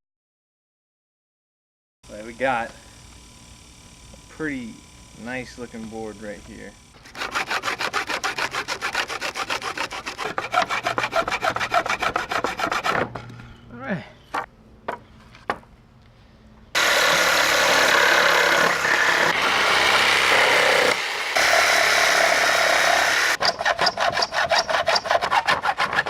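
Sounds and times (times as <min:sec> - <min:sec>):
hand saw strokes on wood: 0:07.0 - 0:13.2, 0:16.8 - 0:26.0
power tool running: 0:16.8 - 0:25.1.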